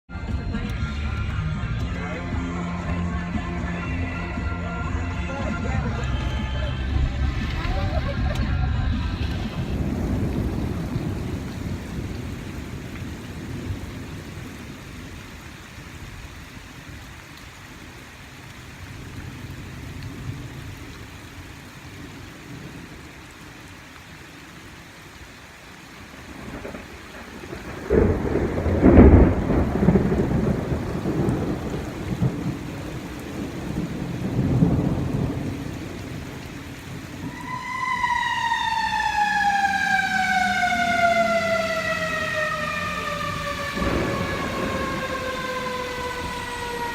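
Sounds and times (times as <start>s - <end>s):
heavy rain falling: 0.1s - 46.9s
thunder rumbling: 4.3s - 17.2s, 18.6s - 23.2s, 26.0s - 46.9s
siren: 37.1s - 46.9s.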